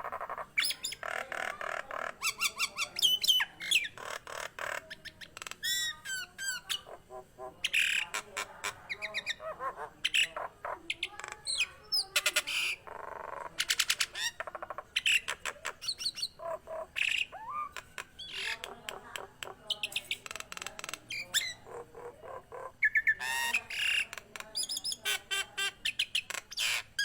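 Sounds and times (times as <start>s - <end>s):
myna bird whistling and squawking: 0.0s - 4.2s, 22.7s - 26.9s.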